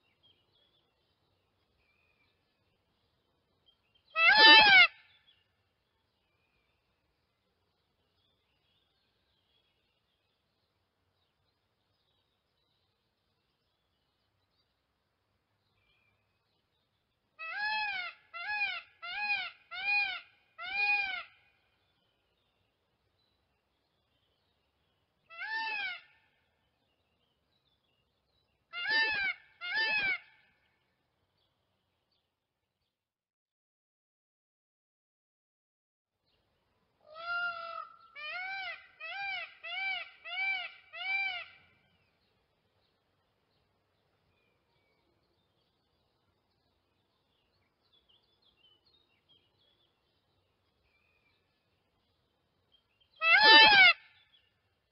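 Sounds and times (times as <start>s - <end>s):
peafowl calling: 4.2s - 5.1s, 28.7s - 30.4s, 37.1s - 41.6s, 53.2s - 54.2s.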